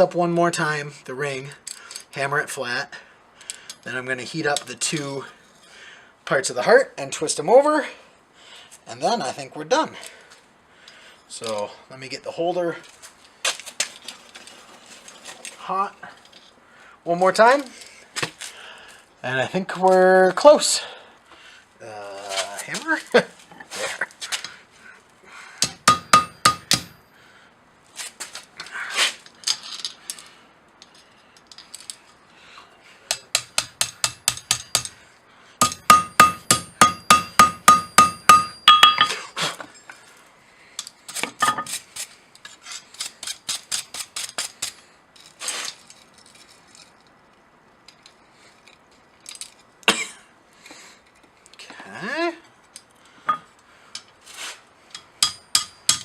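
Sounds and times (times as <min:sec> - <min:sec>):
hammer striking steel on anvil: 0:25.6 - 0:27.0, 0:33.1 - 0:35.0, 0:35.6 - 0:39.2, 0:55.2 - 0:56.0.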